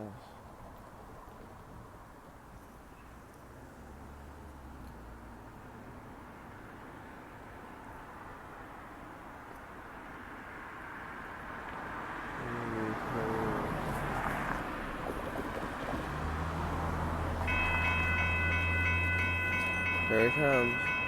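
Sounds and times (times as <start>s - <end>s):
diesel locomotive hum: 12.4s - 21.0s
train rumble: 13.6s - 21.0s
chord of high ringing tones: 17.5s - 21.0s.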